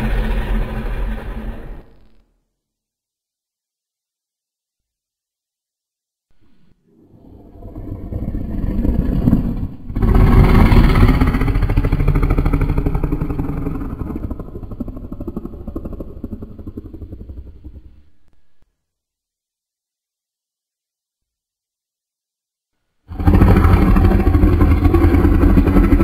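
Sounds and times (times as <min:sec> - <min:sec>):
dragon growl: 0:06.4 - 0:18.2, 0:23.1 - 0:26.0.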